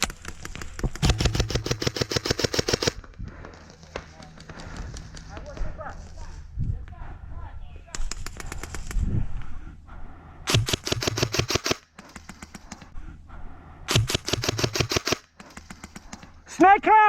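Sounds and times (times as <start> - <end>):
airsoft gun bursts: 1.0 - 3.0, 10.5 - 11.8, 13.9 - 15.8.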